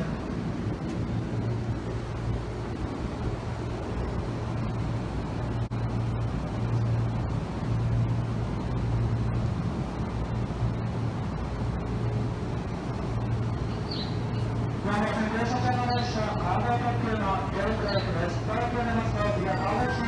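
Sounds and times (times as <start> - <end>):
stopped electric train humming: 0.0 - 20.0.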